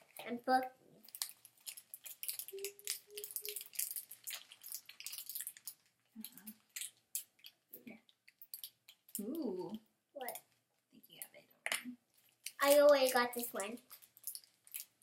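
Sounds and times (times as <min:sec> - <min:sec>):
plastic bag crinkling and tearing: 0:01.0 - 0:07.5, 0:12.2 - 0:15.0.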